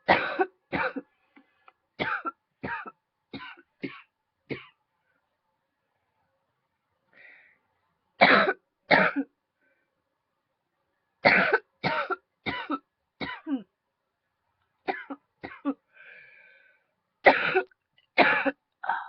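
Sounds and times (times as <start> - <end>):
woman coughing: 0.0 - 1.0, 2.0 - 4.8, 8.2 - 9.3, 11.3 - 13.7, 14.9 - 15.8, 17.3 - 18.6.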